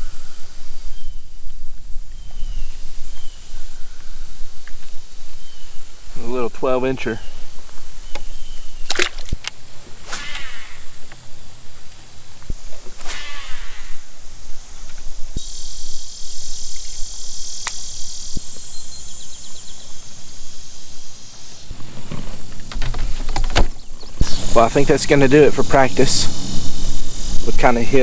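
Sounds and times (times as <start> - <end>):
insects buzzing: 0.0 - 28.0
short knocks and rustles: 21.8 - 24.6
higher buzzing: 21.8 - 28.0.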